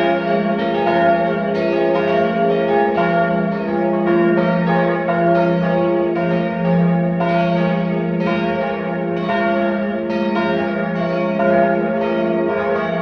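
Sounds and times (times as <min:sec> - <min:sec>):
church bells pealing: 0:00.0 - 0:13.0.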